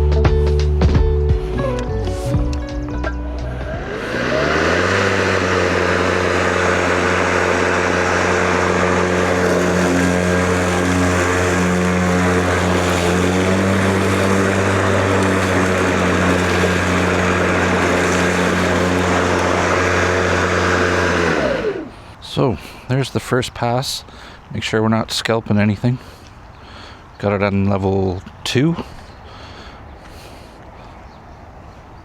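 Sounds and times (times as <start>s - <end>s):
electric lawn mower cutting grass: 1.7s - 22.0s.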